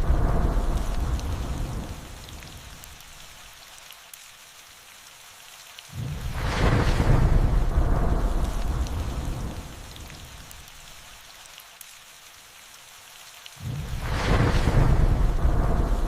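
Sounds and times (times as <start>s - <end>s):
rolling thunder rumble: 0.0s - 2.9s, 6.0s - 10.5s, 13.6s - 16.0s
rain falling: 0.0s - 16.0s.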